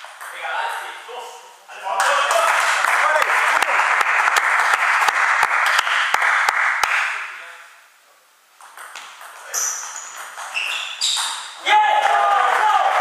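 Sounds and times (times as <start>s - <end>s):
spectators applauding: 2.0s - 7.1s, 12.0s - 13.0s.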